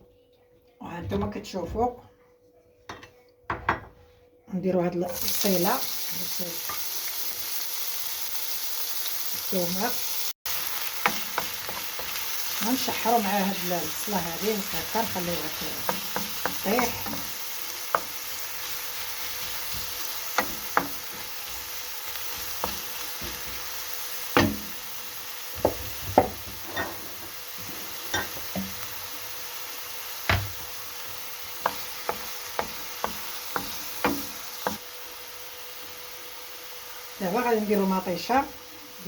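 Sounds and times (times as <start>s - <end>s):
onion sizzling in a pan: 5.1s - 39.0s
utensil knocking against a pan: 24.4s - 24.7s, 25.6s - 26.5s, 30.3s - 30.6s, 31.6s - 34.8s.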